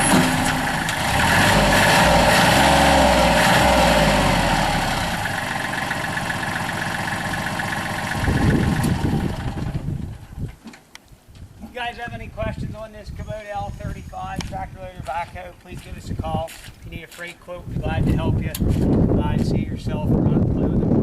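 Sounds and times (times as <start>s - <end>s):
tractor diesel engine running: 0.0s - 10.5s.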